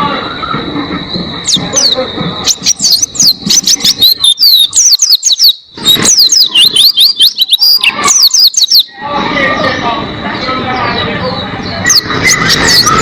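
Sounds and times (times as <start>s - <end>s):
bird singing high chirps: 1.1s - 9.0s, 10.4s - 13.0s.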